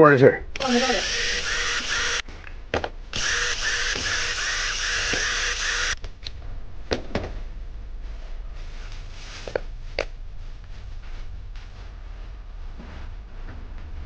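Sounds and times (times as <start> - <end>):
power tool motor running: 0.6 - 2.2, 3.1 - 6.0.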